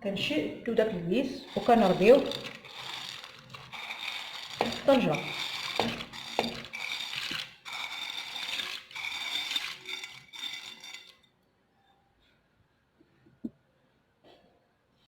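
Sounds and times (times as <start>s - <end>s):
dry pasta pouring into pot: 1.4s - 11.2s.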